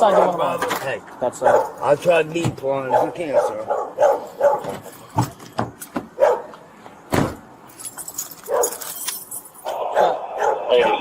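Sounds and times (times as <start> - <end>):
dog barking: 0.0 - 0.4, 1.4 - 1.8, 2.9 - 4.8, 6.2 - 6.5, 8.4 - 8.8, 9.8 - 11.0.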